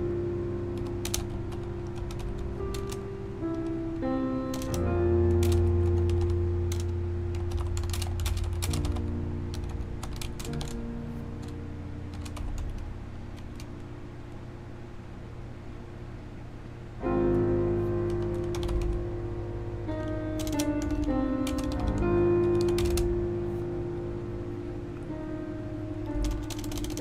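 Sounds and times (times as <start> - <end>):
background music: 0.0 - 14.2, 17.0 - 27.0
mechanical keyboard key clicks: 4.5 - 4.8, 20.0 - 23.1, 26.1 - 27.0.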